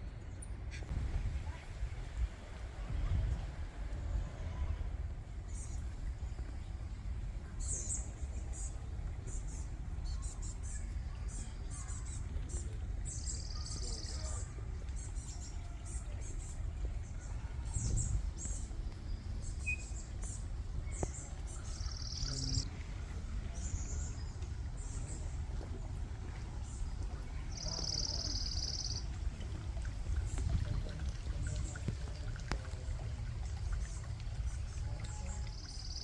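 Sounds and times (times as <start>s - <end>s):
steady low rumble: 0.0s - 36.0s
birds chirping: 5.4s - 36.0s
buzzy bird trills: 27.5s - 29.1s.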